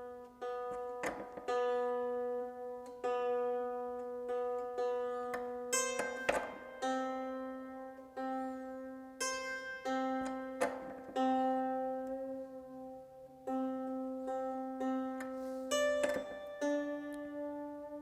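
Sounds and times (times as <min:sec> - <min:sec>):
hammered dulcimer strings plucked: 0:00.0 - 0:18.0.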